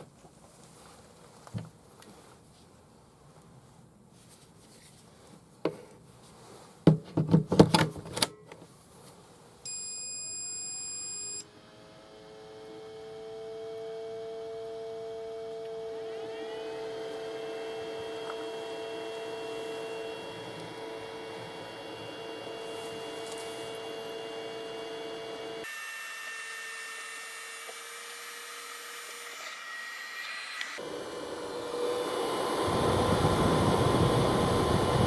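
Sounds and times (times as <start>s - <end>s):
battery charger beep: 9.7s - 11.4s
cooling fan whine: 9.7s - 35.0s.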